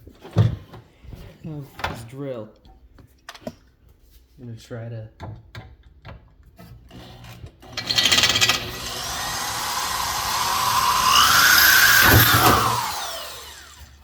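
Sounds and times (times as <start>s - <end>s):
electric drill boring through metal: 7.8s - 14.0s.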